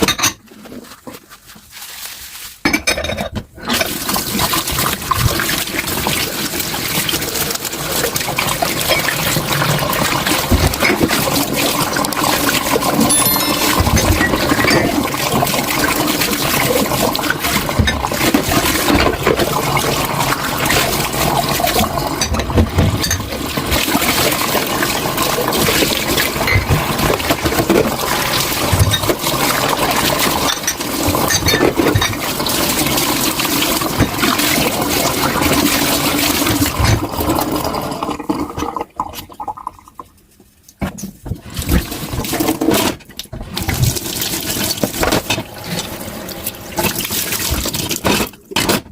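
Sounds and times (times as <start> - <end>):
tap water running into sink: 3.7 - 39.9, 41.3 - 48.3
dishware clinking: 13.1 - 15.0.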